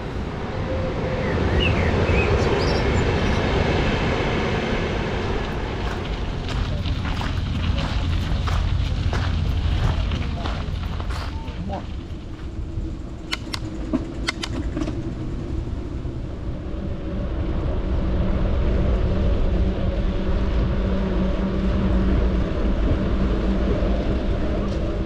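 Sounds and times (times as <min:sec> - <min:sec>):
vehicle engine rumbling: 0:00.0 - 0:25.0
sharp clicks: 0:13.2 - 0:15.0.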